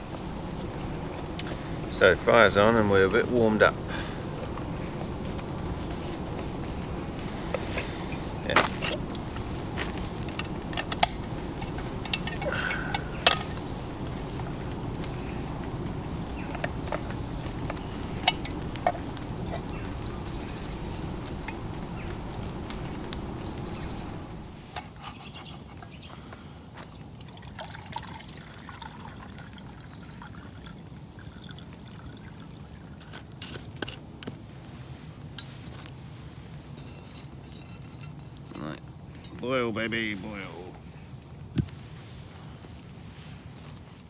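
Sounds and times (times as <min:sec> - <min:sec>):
water pouring: 0:26.6 - 0:34.0.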